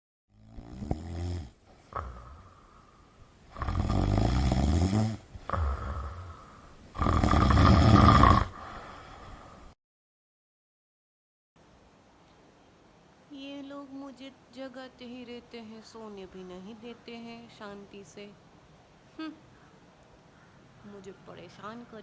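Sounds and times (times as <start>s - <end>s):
dog snoring: 0.3s - 2.6s, 3.5s - 6.4s, 7.0s - 8.6s.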